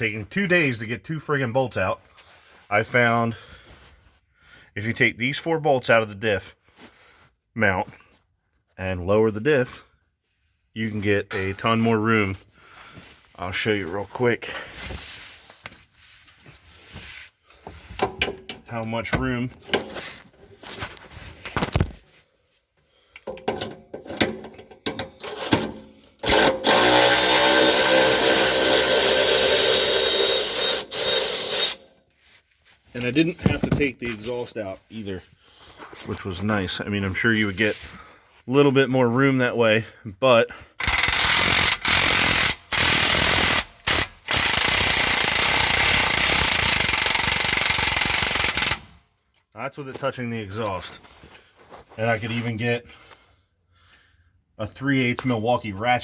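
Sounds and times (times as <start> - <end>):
metal tools clattering: 23.3 - 25.9
cordless electric ratchet whirring: 25.2 - 31.9, 40.8 - 49.0
power tool running: 25.2 - 31.9, 40.8 - 48.9.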